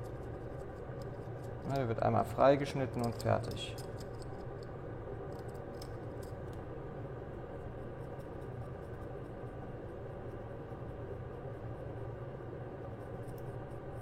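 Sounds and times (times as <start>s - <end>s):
blade scratching and clicking: 0.0s - 6.6s
steady low hum: 0.0s - 14.0s.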